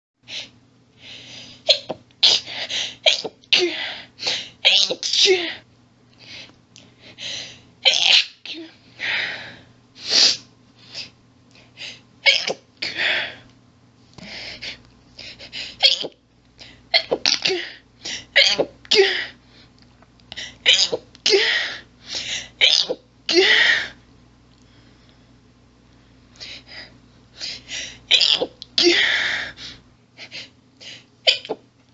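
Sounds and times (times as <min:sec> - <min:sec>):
woman sneezing rapidly: 0:01.7 - 0:05.6, 0:07.8 - 0:08.7, 0:12.2 - 0:13.0, 0:15.8 - 0:16.2, 0:16.9 - 0:19.4, 0:20.6 - 0:21.8, 0:22.6 - 0:24.0, 0:28.1 - 0:29.5, 0:31.3 - 0:31.6.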